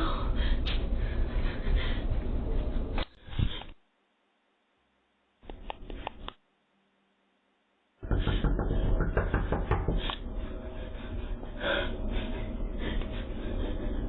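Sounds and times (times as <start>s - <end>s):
banging on a door: 8.0s - 10.0s.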